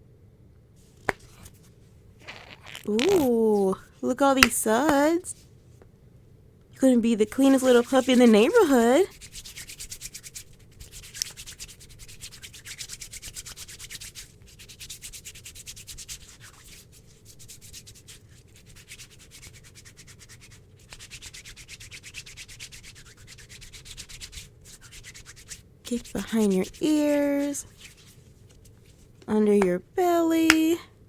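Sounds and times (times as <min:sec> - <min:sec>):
hands scrubbing lather: 0:07.2 - 0:30.7.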